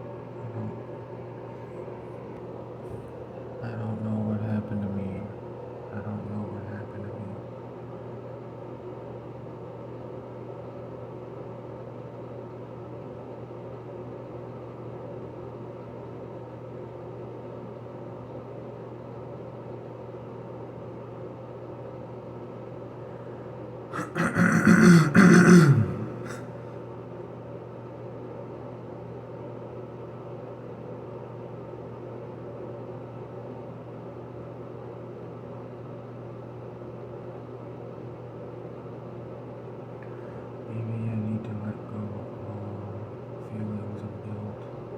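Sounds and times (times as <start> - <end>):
mechanical hum of equipment: 0.0 - 44.9
person crying out: 24.0 - 26.5.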